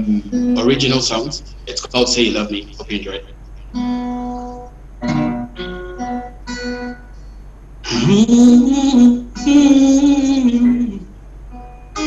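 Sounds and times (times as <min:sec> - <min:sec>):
acoustic guitar picked notes: 0:00.0 - 0:12.0.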